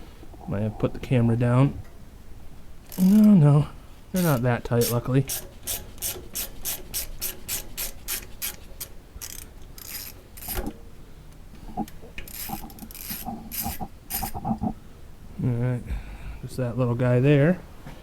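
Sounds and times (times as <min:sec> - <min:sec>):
hand ratchet clicking: 0:02.8 - 0:03.4, 0:04.2 - 0:10.8, 0:11.8 - 0:14.7.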